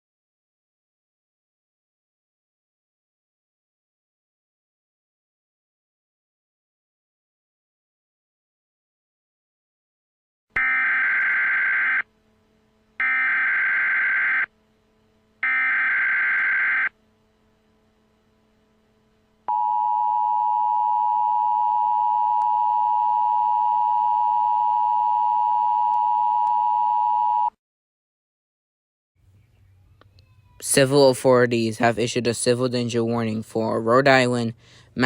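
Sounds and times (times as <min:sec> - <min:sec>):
buzzing data bursts: 0:13.0 - 0:14.5, 0:15.4 - 0:16.9
two-tone attention signal: 0:19.5 - 0:27.5.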